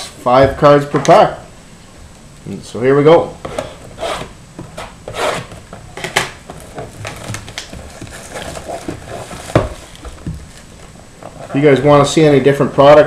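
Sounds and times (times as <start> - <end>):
cardboard box rustling and scraping: 3.6 - 11.6.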